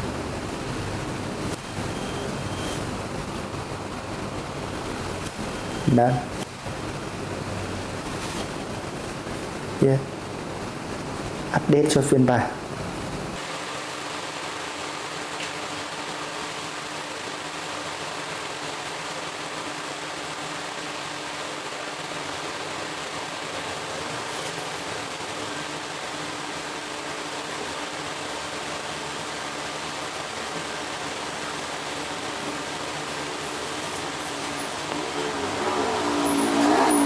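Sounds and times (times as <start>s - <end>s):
steady background hiss: 0.0s - 37.0s.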